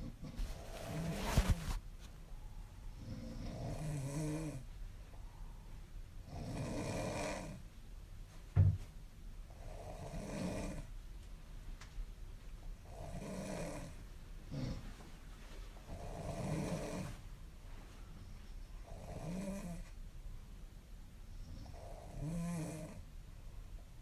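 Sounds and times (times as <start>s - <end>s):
woman snoring: 3.0s - 4.6s, 6.3s - 7.6s, 9.6s - 10.9s, 12.9s - 14.8s, 15.9s - 17.1s, 18.9s - 19.9s, 21.6s - 23.0s.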